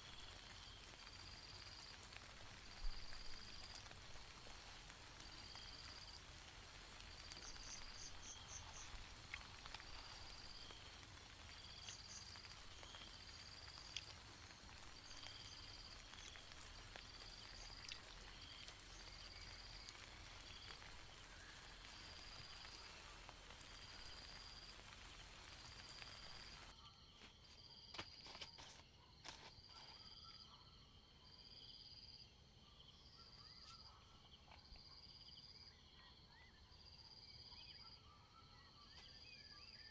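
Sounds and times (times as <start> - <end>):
faint rain hiss: 0.0 - 26.8
faint water drips: 0.0 - 26.8
insect chirping: 0.0 - 39.9.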